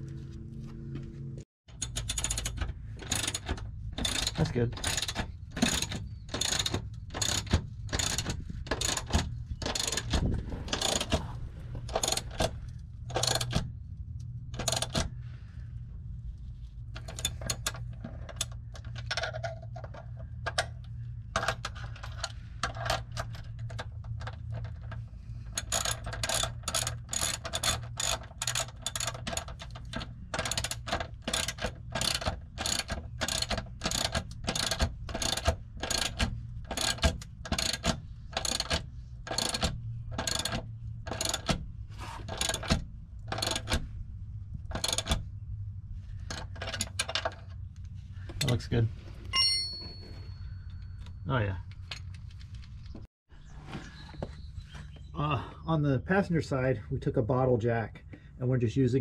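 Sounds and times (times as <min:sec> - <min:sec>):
ratchet wrench clicking: 0:01.8 - 0:10.1, 0:25.6 - 0:41.5.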